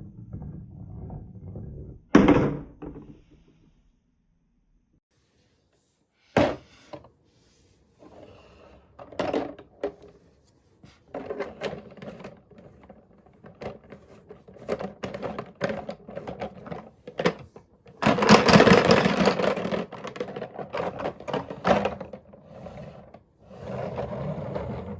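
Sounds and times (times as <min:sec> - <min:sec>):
dense marble rattle: 0:11.2 - 0:22.4.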